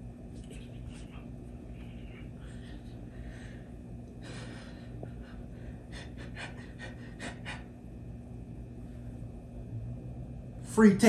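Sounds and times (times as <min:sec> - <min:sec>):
soft breaths: 0:00.5 - 0:07.8.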